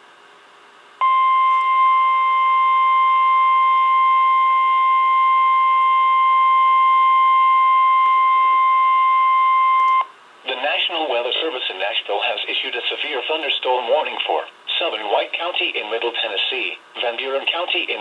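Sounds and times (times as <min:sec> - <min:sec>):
loud steady warning beep: 0:01.0 - 0:10.1
faint radio hiss: 0:10.1 - 0:18.0.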